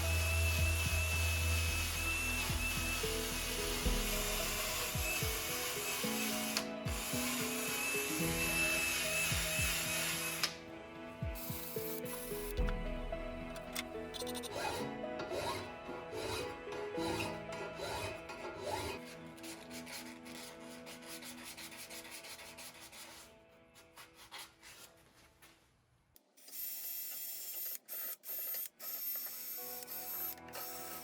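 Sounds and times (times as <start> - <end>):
background music: 0.0 - 25.6, 29.3 - 31.0.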